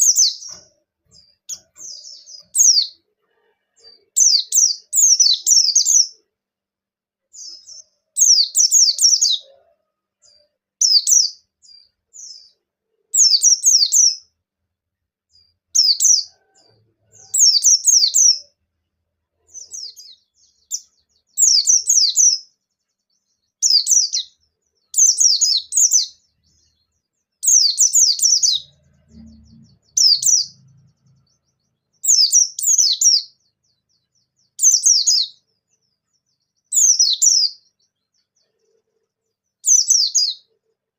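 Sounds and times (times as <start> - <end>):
bird chirping rapidly: 0.0 - 3.0, 27.4 - 33.5, 34.5 - 35.5, 39.6 - 40.5.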